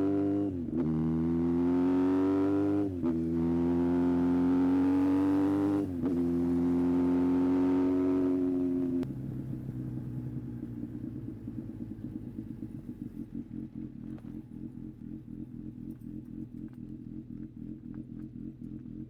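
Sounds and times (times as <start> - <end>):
motorcycle engine idling: 9.1 - 19.0.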